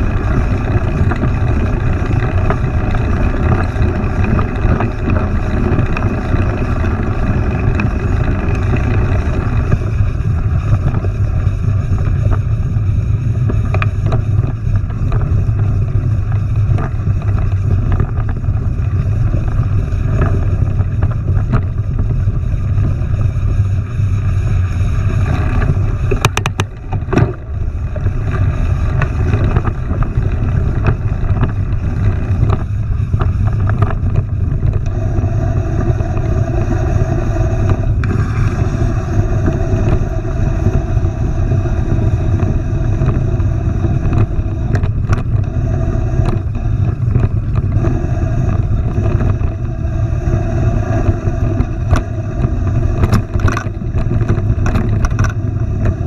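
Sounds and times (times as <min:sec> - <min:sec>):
bike tyres rumbling on trail: 0:00.0 - 0:56.0
wind on microphone: 0:00.0 - 0:56.0
clicks and rattles: 0:25.2 - 0:35.0, 0:53.0 - 0:56.0.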